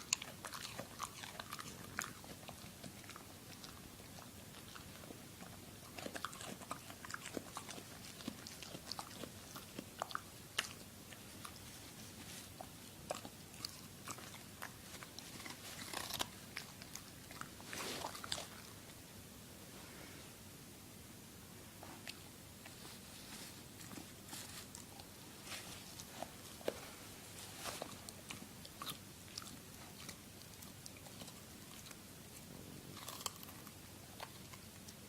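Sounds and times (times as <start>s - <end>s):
pet crunching carrot: 0.0s - 19.0s, 21.8s - 35.0s.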